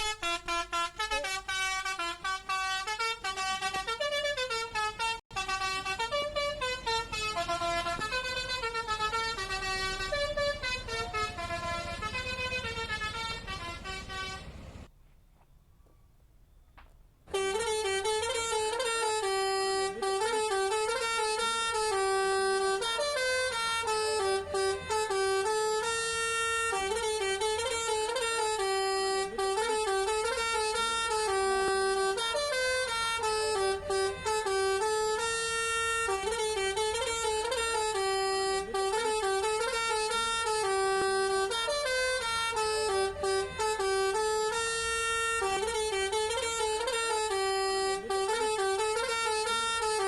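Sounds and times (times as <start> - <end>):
multi-tone bus horn melody: 0.0 - 14.9, 17.3 - 50.0.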